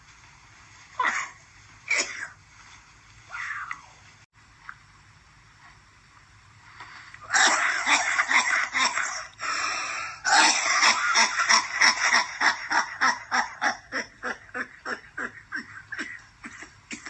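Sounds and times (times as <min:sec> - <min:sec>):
wheezing breath: 0:09.4 - 0:10.3.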